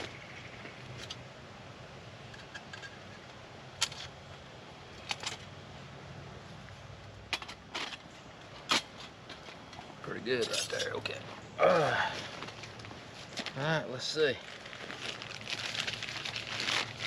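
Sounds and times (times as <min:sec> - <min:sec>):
camp gear clicking and knocking: 0:02.3 - 0:05.5, 0:07.3 - 0:11.0.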